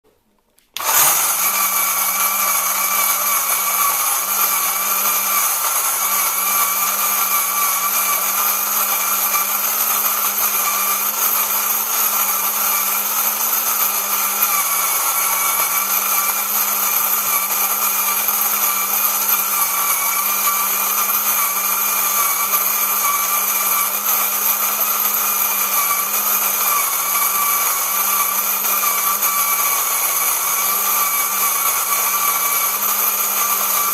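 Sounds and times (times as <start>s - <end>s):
coffee grinder motor whining: 0.8s - 33.9s.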